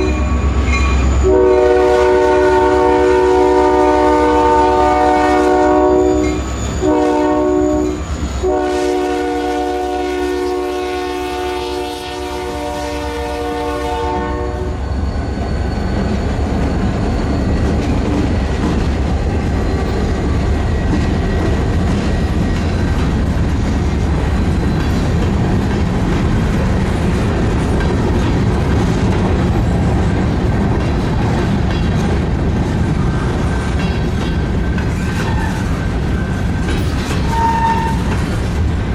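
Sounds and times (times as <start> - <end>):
train rumbling by: 0.0 - 38.9
train air horn: 1.2 - 14.8, 37.3 - 38.1
wheels clicking over rail joints: 17.5 - 38.9.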